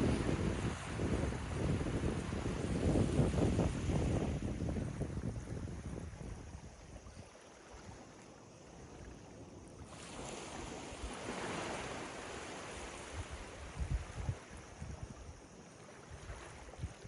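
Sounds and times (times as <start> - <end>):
wind buffeting microphone: 0.0 - 7.2, 12.9 - 15.4
ocean waves breaking on beach: 0.0 - 17.0.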